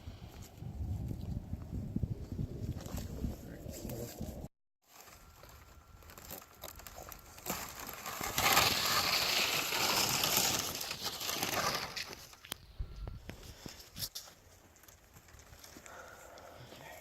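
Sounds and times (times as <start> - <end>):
thermal blanket crinkling: 4.8 - 12.6.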